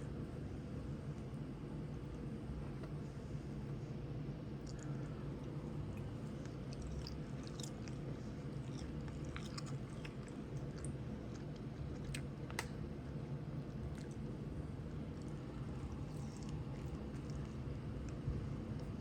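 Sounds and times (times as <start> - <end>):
low background hum: 0.0 - 19.0
chewing crunchy food: 4.6 - 19.0.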